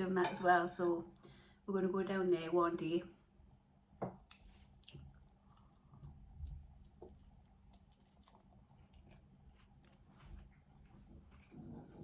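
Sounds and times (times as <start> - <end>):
close-up chewing: 4.2 - 12.0.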